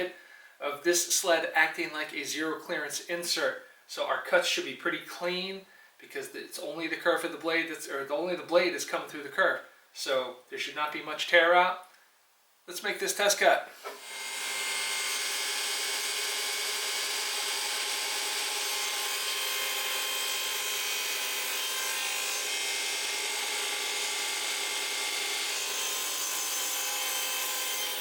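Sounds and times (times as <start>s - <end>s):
table saw cutting wood: 13.8s - 28.0s.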